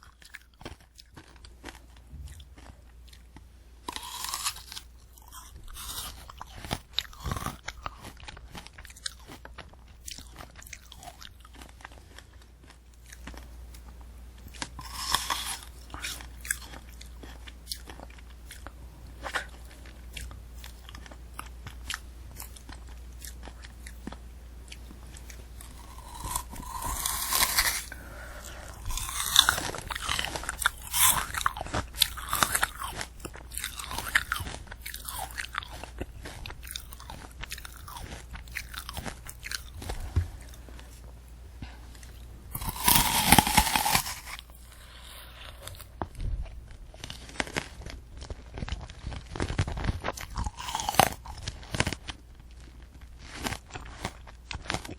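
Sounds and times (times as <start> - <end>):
candy apple crunching: 0.0 - 54.9
chewing: 0.0 - 54.9
hard sugar shell cracking: 25.6 - 28.0, 28.7 - 36.0, 42.5 - 44.5.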